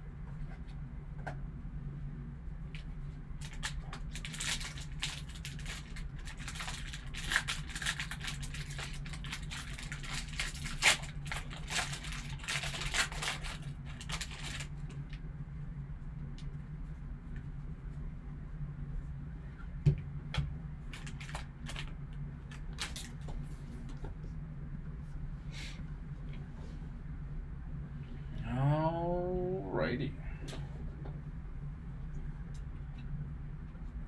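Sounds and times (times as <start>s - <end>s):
card packaging tearing: 3.5s - 14.7s
low hum: 7.8s - 34.0s.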